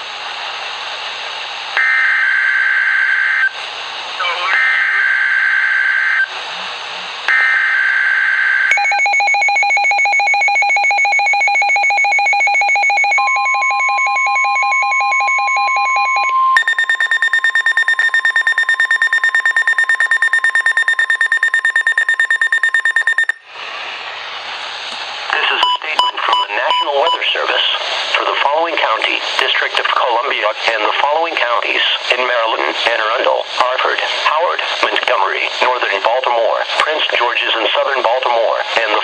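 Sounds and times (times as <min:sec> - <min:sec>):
steady warning alarm tone: 0:01.8 - 0:03.5, 0:04.5 - 0:06.3, 0:07.3 - 0:23.5
fast-beeping receiver alarm: 0:08.7 - 0:23.4
higher fast-beeping alarm: 0:08.7 - 0:23.5.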